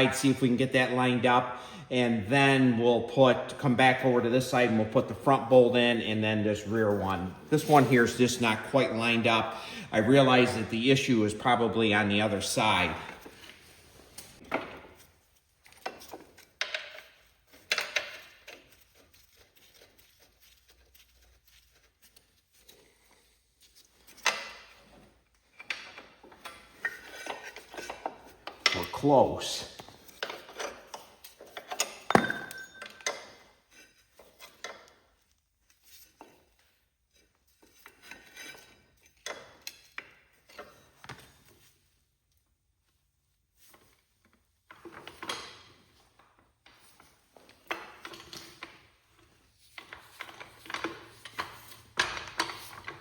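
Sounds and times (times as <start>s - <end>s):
metal tools clanking: 25.6s - 34.6s
sharp metal clink: 32.1s - 33.2s.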